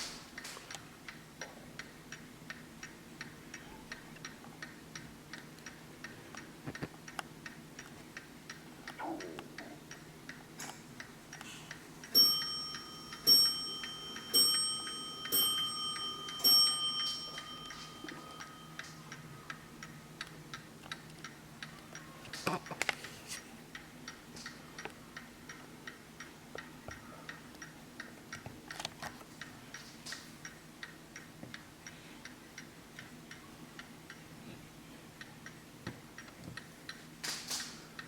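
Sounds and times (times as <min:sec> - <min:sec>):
clock ticking: 0:00.0 - 0:34.4, 0:35.0 - 0:38.0
clock bell striking: 0:12.1 - 0:19.2.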